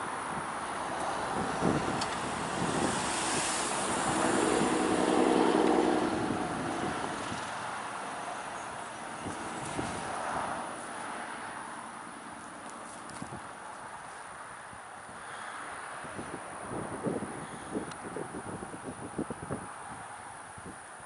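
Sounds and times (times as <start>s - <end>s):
diesel locomotive passing: 0.0s - 12.6s
wind on microphone: 0.2s - 10.8s, 16.0s - 21.0s.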